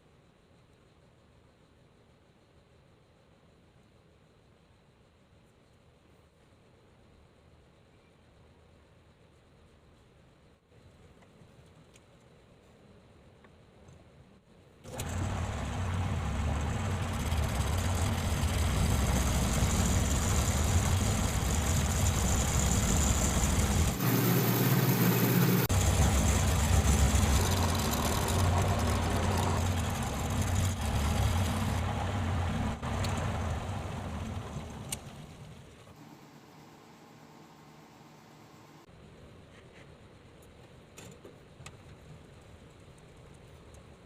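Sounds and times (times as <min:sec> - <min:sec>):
lathe motor humming: 0:14.9 - 0:35.0.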